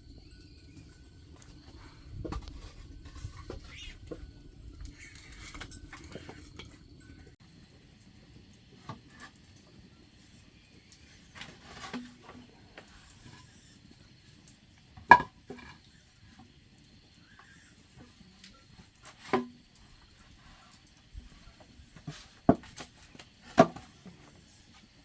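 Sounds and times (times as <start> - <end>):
low background rumble: 0.0 - 7.8.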